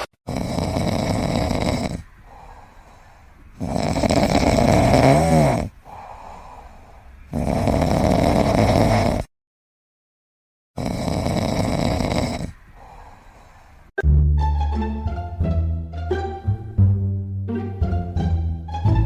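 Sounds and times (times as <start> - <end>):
pet snoring loudly: 0.3 - 2.1, 3.6 - 6.3, 7.3 - 9.3, 10.8 - 12.6.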